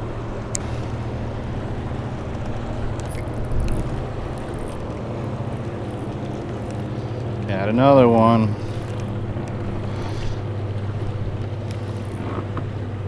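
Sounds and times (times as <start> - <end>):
boat motor humming: 0.0 - 13.0
wind noise on microphone: 2.3 - 6.9.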